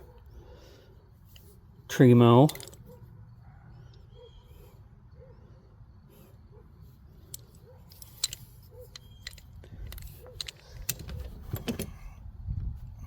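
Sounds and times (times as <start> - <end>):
metal wrenches clinking: 2.3 - 2.9, 7.3 - 12.0.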